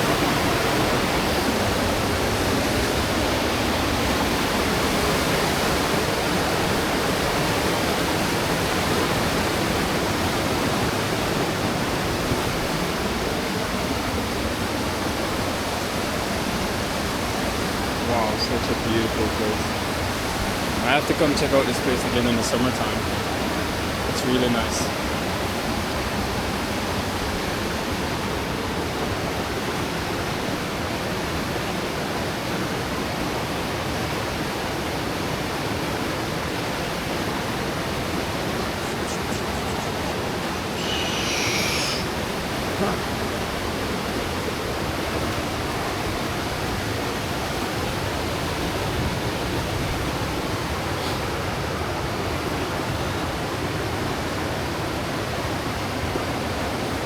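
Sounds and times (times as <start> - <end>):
waterfall and river rushing: 0.0 - 57.0
brief high hiss: 40.8 - 42.2.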